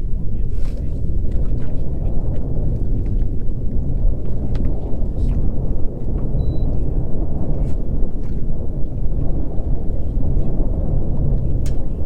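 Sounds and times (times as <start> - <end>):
wind buffeting microphone: 0.0 - 12.0.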